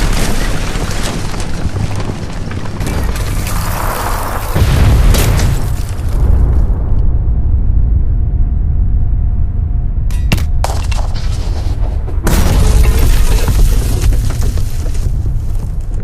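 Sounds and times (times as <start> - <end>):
shattering debris: 0.0 - 6.5, 10.3 - 15.6
artillery explosions: 0.0 - 7.0
deep rumble: 0.0 - 16.0.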